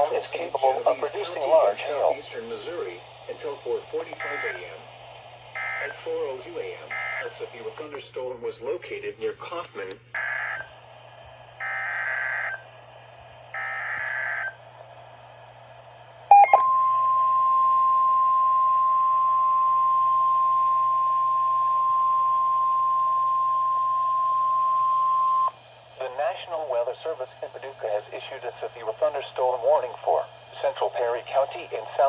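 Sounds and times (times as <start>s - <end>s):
steady warning alarm tone: 0.0s - 4.9s, 5.5s - 7.7s, 10.2s - 10.7s, 11.6s - 12.6s, 13.5s - 14.6s, 16.3s - 25.6s
buzzy digital data bursts: 0.0s - 7.7s, 11.6s - 12.6s, 13.5s - 14.6s
low hum: 14.5s - 27.5s.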